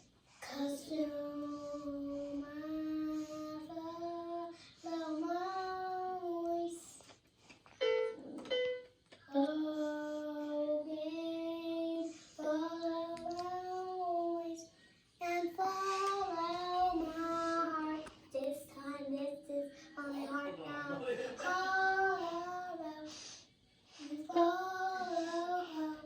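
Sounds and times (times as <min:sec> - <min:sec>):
child singing: 0:00.4 - 0:07.0, 0:09.2 - 0:26.0.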